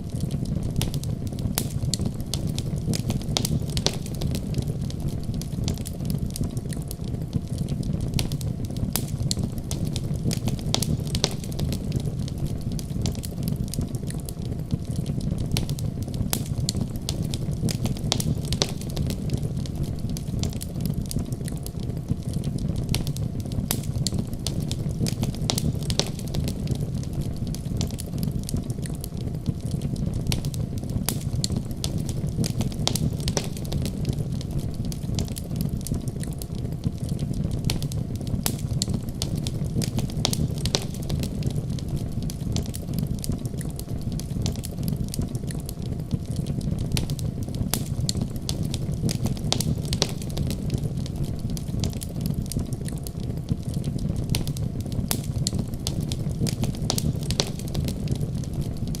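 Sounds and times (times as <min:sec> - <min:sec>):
low fire rumble: 0:00.0 - 0:59.0
wood fire crackling and popping: 0:00.0 - 0:59.0.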